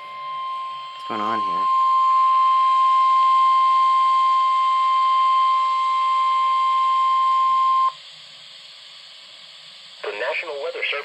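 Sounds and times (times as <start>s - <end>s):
steady alarm beep: 0.0s - 8.0s
radio receiver hiss: 0.0s - 11.0s.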